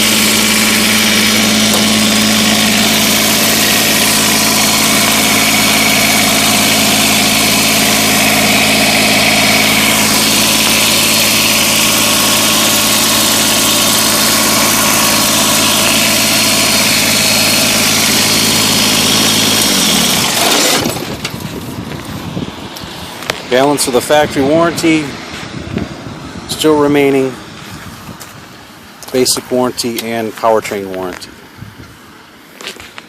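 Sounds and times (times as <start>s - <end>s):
diesel tractor engine idling: 0.0s - 32.6s.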